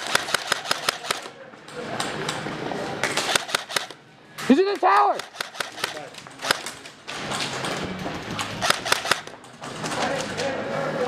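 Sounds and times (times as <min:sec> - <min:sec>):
airsoft guns firing: 0:00.0 - 0:01.3, 0:03.1 - 0:04.0, 0:04.8 - 0:06.8, 0:08.6 - 0:09.3.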